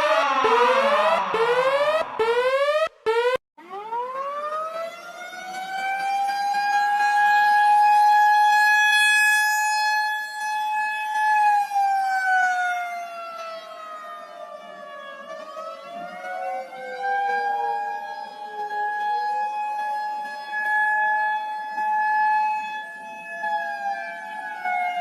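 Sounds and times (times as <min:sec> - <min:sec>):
second lower siren tone: 0:00.0 - 0:08.6, 0:09.3 - 0:25.0
warning siren wailing: 0:00.0 - 0:25.0.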